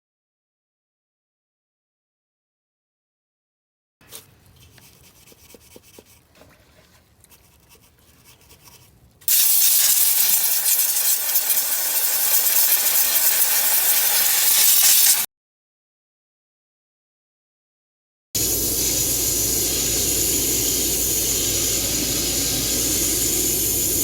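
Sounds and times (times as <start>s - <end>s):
spray can hissing: 9.3s - 15.3s, 18.4s - 24.0s.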